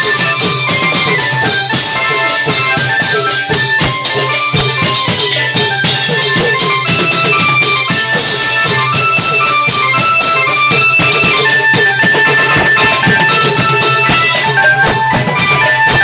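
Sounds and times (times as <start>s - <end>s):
melody over drums: 10.0s - 14.6s
drum strokes: 10.6s - 14.3s.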